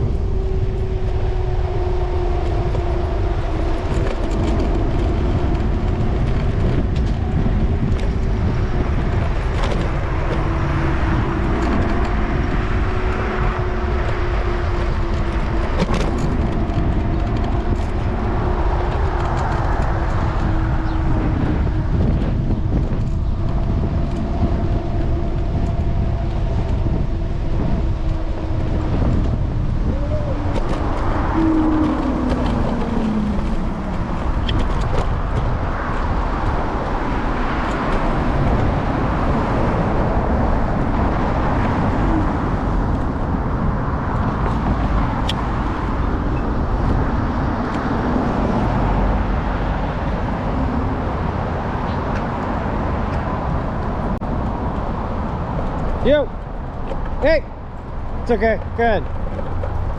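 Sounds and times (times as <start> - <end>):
humming tone sliding down: 0.0 - 35.2
street traffic rumble: 0.0 - 59.9
wind on microphone: 0.0 - 59.9.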